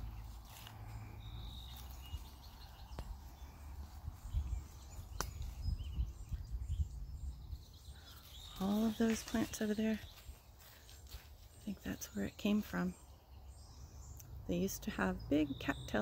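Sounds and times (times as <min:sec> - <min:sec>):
wind rumble on microphone: 0:02.0 - 0:08.6.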